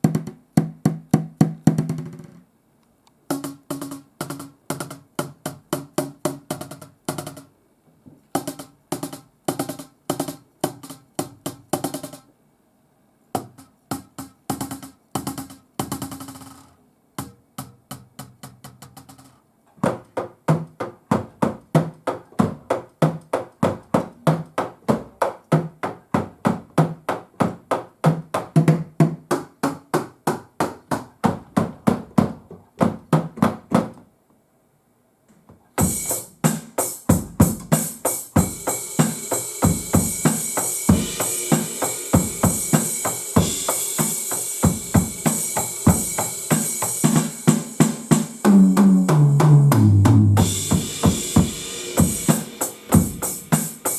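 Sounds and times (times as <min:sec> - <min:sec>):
sticks hitting drum pads: 0:13.4 - 0:16.6, 0:17.2 - 0:34.1.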